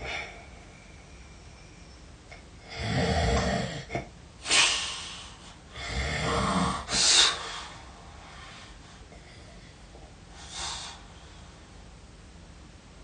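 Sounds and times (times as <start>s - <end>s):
person snoring heavily: 2.6s - 4.8s, 5.7s - 7.6s
sharp burst of breath: 4.4s - 5.5s, 6.9s - 8.7s, 10.4s - 11.1s.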